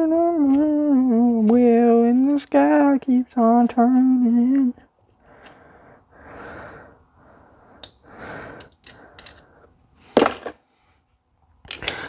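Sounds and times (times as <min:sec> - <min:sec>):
light clicks of parts: 0:07.8 - 0:09.5, 0:11.6 - 0:12.0.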